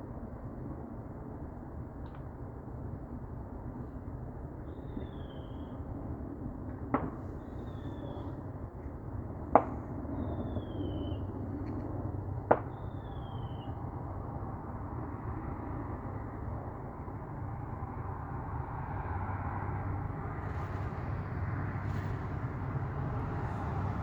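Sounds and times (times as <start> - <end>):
low background rumble: 7.2 - 24.0.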